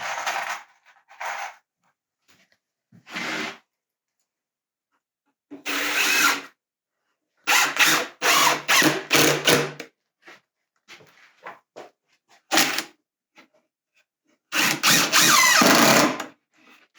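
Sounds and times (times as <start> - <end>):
power drill driving screws: 5.7 - 6.4, 7.5 - 9.8, 14.5 - 16.3.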